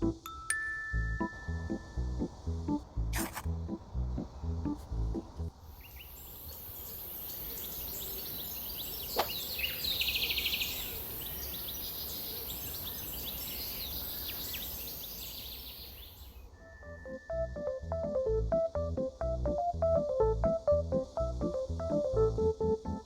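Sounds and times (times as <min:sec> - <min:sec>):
high-pitched hiss: 0:00.0 - 0:18.3
birds chirping: 0:01.2 - 0:17.7.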